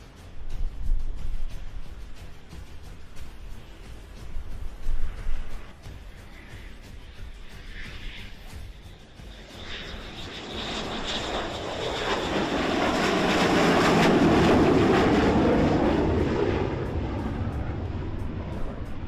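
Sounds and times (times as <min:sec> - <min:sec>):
aircraft flying past: 0:00.0 - 0:19.0.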